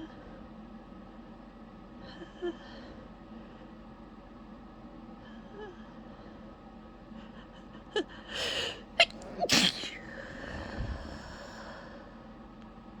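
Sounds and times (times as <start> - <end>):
woman gasping in-breath: 8.3 - 12.0
woman breathing: 8.3 - 12.3
woman sneezing: 9.0 - 10.1.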